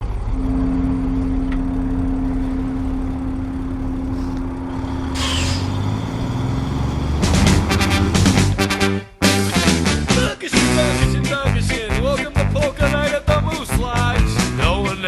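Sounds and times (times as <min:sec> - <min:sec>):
motor rumbling and humming: 0:00.3 - 0:09.1.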